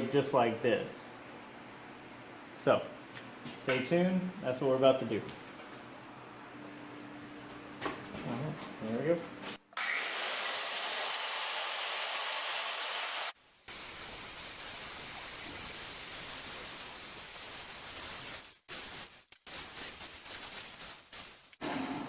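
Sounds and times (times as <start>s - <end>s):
plasma cutter hissing: 13.3s - 21.6s.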